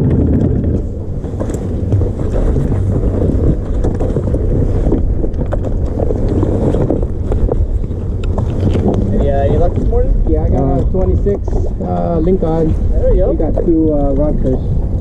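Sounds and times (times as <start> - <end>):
boat motor idling: 0.0 - 15.0
wind buffeting microphone: 0.0 - 15.0.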